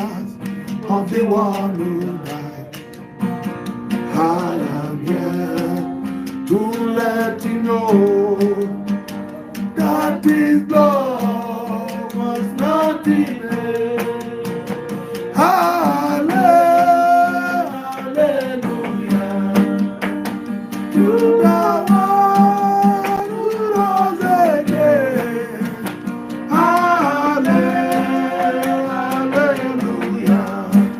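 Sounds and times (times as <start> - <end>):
acoustic guitar: 0.0 - 30.9
person singing long gliding notes: 20.9 - 25.9, 26.5 - 30.9.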